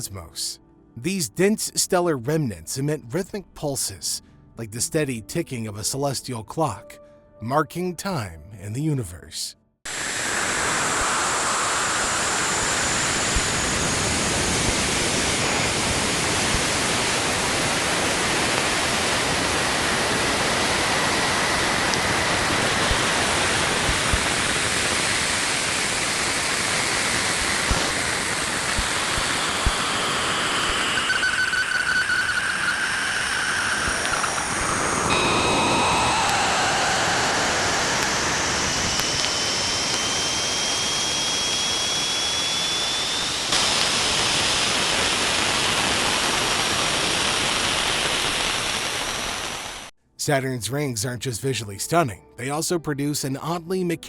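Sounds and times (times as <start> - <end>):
static hiss: 9.9 - 49.9
faint gliding whistle tones: 30.4 - 34.3, 35.1 - 43.5.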